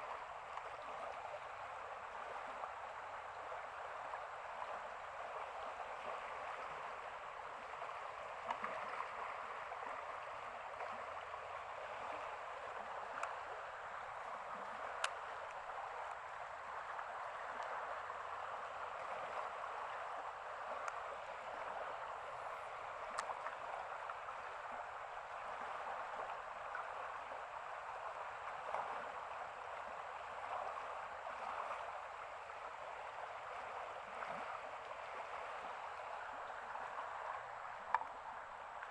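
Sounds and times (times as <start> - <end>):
stream water rushing: 0.0 - 38.9
faint sharp clicks: 8.4 - 8.8, 13.1 - 13.4, 14.6 - 16.2, 17.0 - 17.7, 20.8 - 21.0, 22.4 - 23.6, 37.8 - 38.2.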